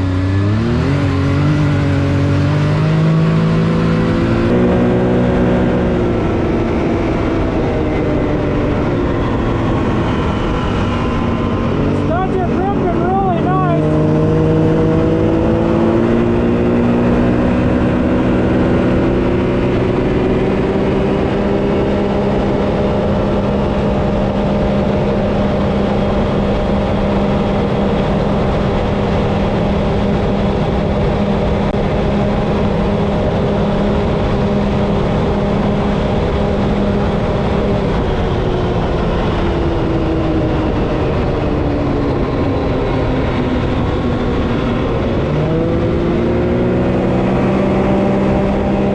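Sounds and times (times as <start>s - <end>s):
engine at full throttle: 0.0s - 48.9s
wind and tire noise: 0.0s - 48.9s.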